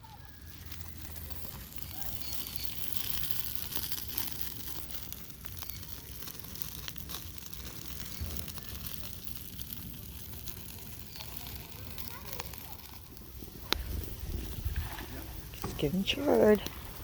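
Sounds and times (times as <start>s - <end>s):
campfire crackling: 0.0s - 17.0s
small pops: 0.5s - 17.0s.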